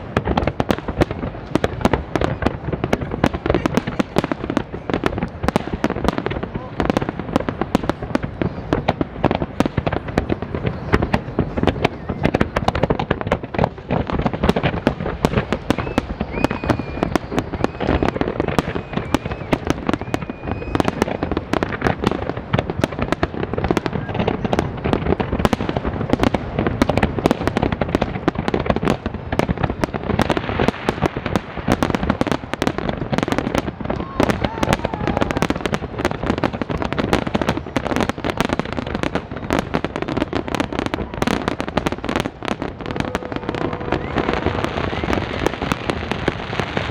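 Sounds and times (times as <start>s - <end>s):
faint wavering whistle: 15.8s - 18.2s.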